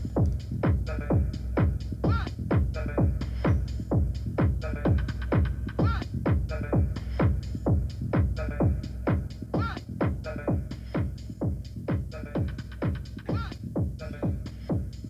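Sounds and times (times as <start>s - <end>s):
heavy kick drum beat: 0.0s - 15.0s
techno music: 0.0s - 15.0s.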